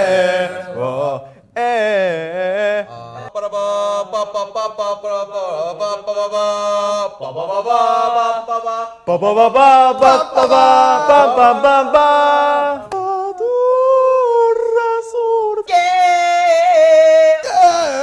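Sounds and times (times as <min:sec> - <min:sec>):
voices singing and yelling: 0:07.2 - 0:14.7, 0:15.6 - 0:18.0.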